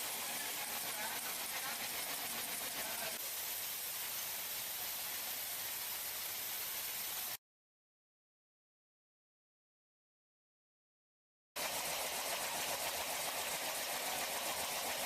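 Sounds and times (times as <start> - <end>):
factory machinery hissing: 0.0 - 7.4, 11.6 - 15.0.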